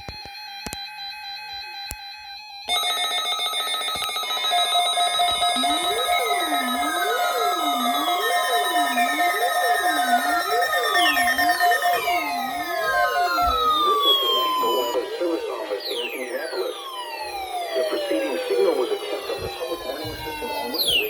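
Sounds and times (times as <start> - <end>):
pulsing alarm tones: 0.0 - 21.0
steady synthesized tones: 3.9 - 21.0
siren-like sweeping tone: 5.5 - 21.0.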